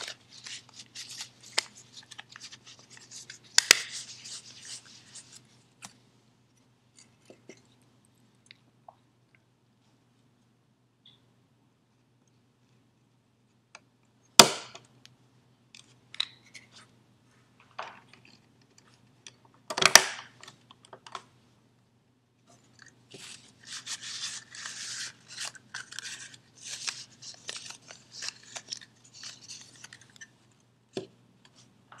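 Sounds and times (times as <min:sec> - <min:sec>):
scratchy rustling and scraping: 0:00.0 - 0:06.0, 0:22.6 - 0:30.4.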